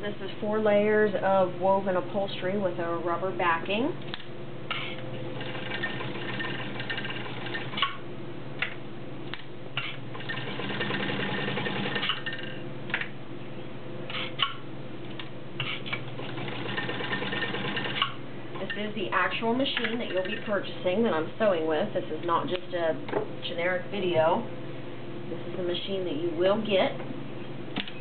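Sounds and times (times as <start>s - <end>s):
sewing machine running: 5.4s - 7.9s, 10.1s - 12.5s, 16.1s - 18.2s.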